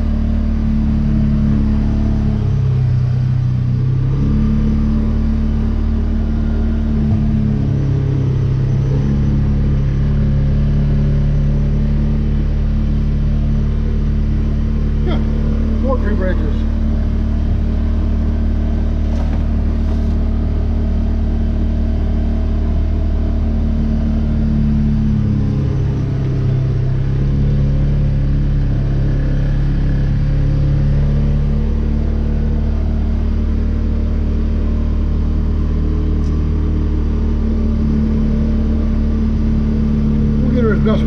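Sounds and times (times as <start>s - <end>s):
vehicle engine under load: 0.0s - 41.0s.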